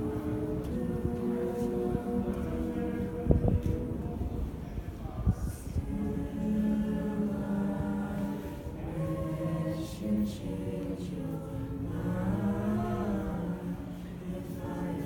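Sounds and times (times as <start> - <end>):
choir singing folk song: 0.0 - 15.0.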